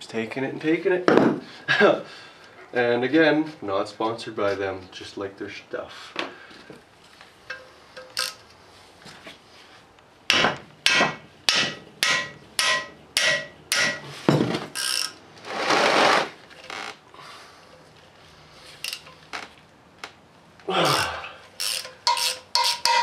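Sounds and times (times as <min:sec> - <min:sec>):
hammer striking metal handle: 0:10.3 - 0:14.1, 0:21.9 - 0:23.0.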